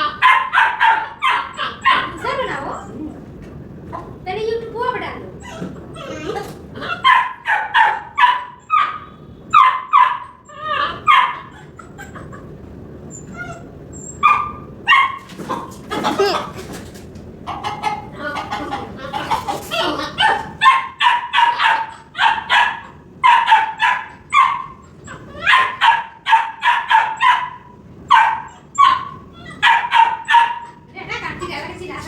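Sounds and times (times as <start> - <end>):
puppy yapping barks: 0.0 - 2.6, 5.4 - 11.7, 14.2 - 16.5, 17.5 - 30.8.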